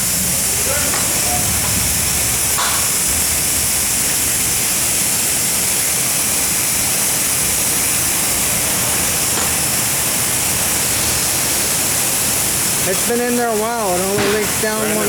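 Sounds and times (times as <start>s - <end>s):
steady loud hiss: 0.0s - 15.0s.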